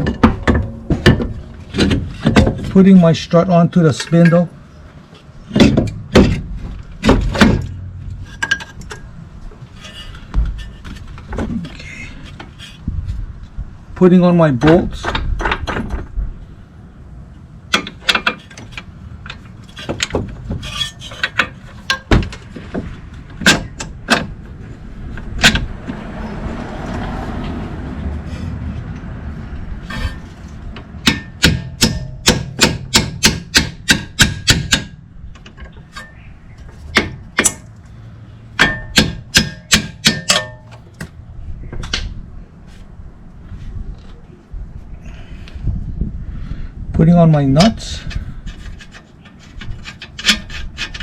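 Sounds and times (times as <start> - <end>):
metal scraping: 0.0 - 13.3, 17.8 - 27.2, 28.2 - 41.2
metal taps and knocks: 5.5 - 9.1, 29.9 - 37.8, 38.6 - 42.1.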